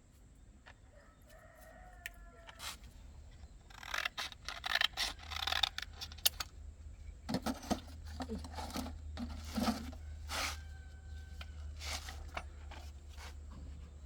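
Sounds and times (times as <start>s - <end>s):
rooster crowing: 0.9s - 2.6s, 9.9s - 12.2s
clattering and scraping: 7.3s - 10.6s.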